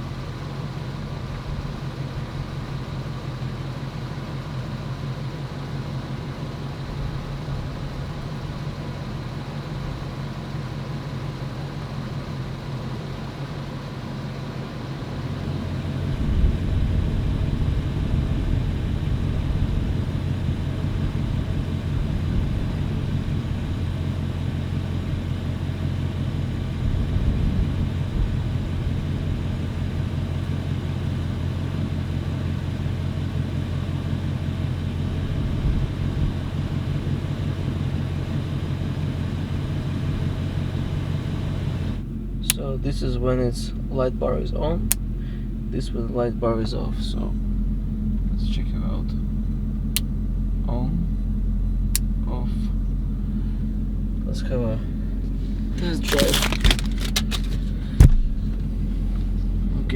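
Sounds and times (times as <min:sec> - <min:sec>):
engine idling: 0:00.0 - 0:59.9
thump: 0:57.9 - 0:58.7.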